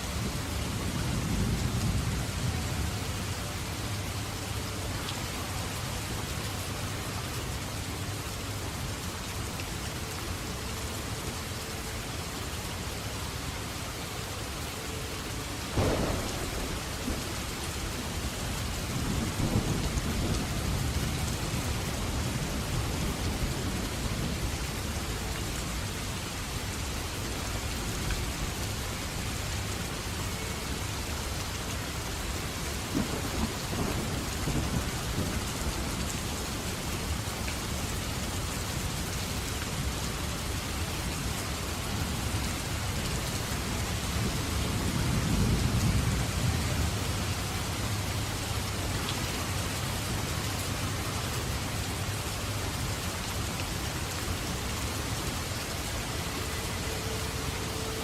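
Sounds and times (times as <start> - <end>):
steady rain falling: 0.0 - 58.0
thunder rumbling: 15.7 - 24.5, 32.8 - 36.1.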